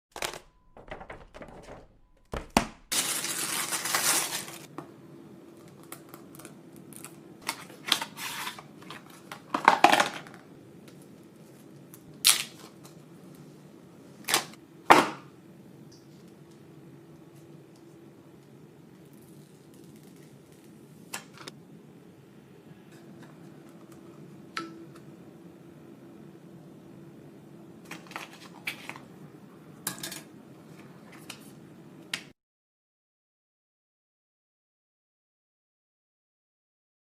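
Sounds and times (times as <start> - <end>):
paper tearing rustle: 2.9 - 4.7
faint steady hum: 3.0 - 32.3.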